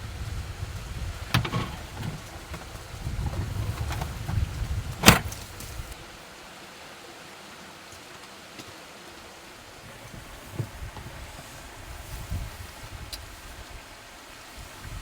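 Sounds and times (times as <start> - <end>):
wind buffeting microphone: 0.0 - 6.1, 9.9 - 15.0.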